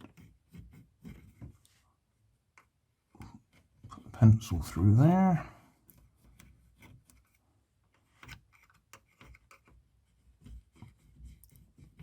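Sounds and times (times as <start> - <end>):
pencil clicks and scratches: 0.0 - 1.8, 5.8 - 12.0.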